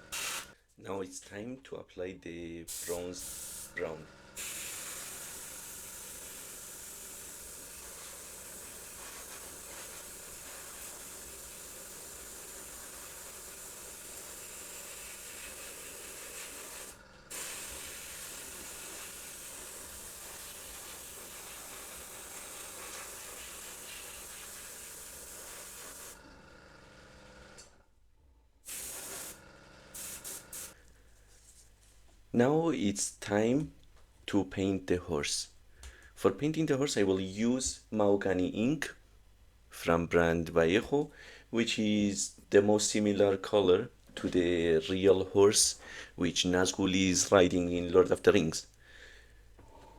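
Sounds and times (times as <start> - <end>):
airbrush spraying hiss: 0.0 - 0.6, 2.7 - 26.2, 28.7 - 29.4, 30.0 - 30.8
airbrush spurts: 0.0 - 0.6, 2.7 - 26.2, 28.6 - 30.9.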